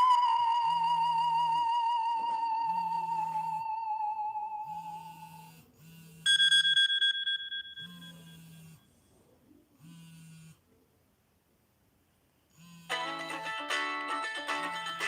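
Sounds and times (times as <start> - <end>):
electronic phone ringtone beeping: 6.3 - 8.8.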